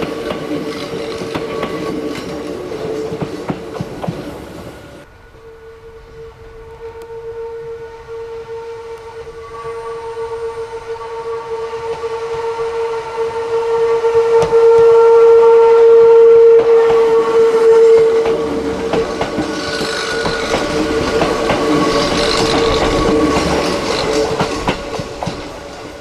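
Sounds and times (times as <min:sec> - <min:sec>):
train cars rumbling and clicking: 0:00.0 - 0:05.1, 0:16.2 - 0:26.0
electric train whine: 0:00.0 - 0:26.0.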